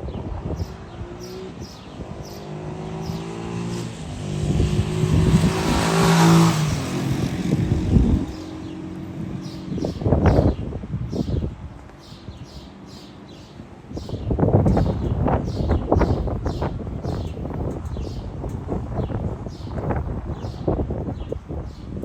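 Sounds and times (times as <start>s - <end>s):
vehicle engine passing by: 0.3s - 11.2s.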